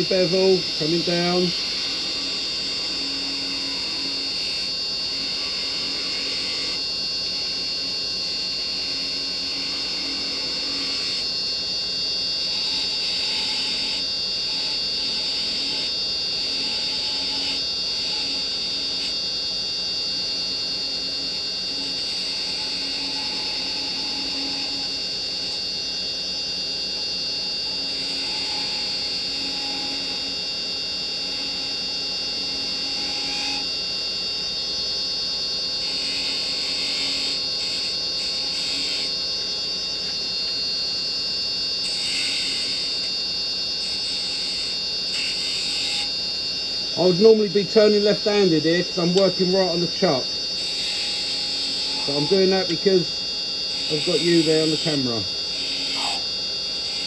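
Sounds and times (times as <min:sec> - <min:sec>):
chisel cutting wood on lathe: 0:00.0 - 0:06.8, 0:08.5 - 0:11.2, 0:12.4 - 0:19.2, 0:21.7 - 0:25.5, 0:27.6 - 0:30.3, 0:32.4 - 0:33.7, 0:35.8 - 0:39.2, 0:41.8 - 0:43.1, 0:43.8 - 0:46.1, 0:46.9 - 0:57.0
lathe high whine: 0:00.0 - 0:57.0.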